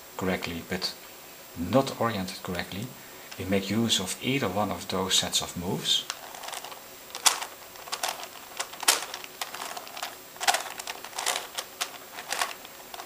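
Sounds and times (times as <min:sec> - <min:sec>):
plastic puzzle cube clicks: 0:06.1 - 0:13.0.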